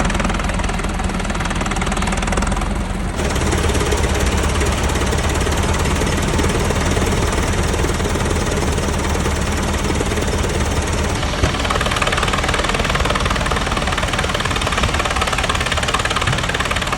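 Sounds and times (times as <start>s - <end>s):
sawmill clatter: 0.0s - 16.9s
tractor engine running: 0.0s - 16.9s.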